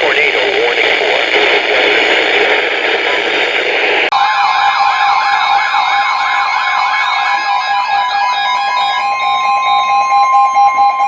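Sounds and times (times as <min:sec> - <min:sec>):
radio hiss: 0:00.0 - 0:04.1
electronic emergency alert tone: 0:04.1 - 0:11.0.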